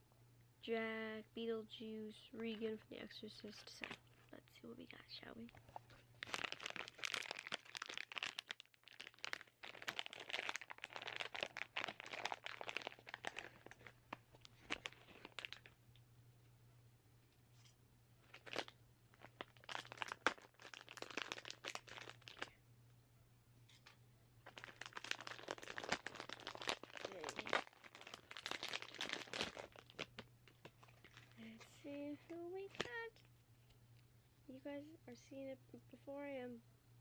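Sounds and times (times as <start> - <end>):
packaging tearing and crinkling: 5.7 - 15.8, 18.3 - 22.5, 24.4 - 31.4.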